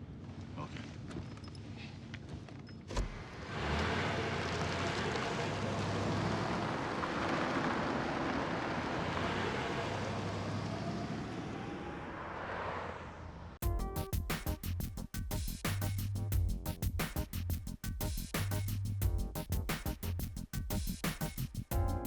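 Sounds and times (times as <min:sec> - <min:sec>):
vehicle noise rushing: 0:03.3 - 0:13.6.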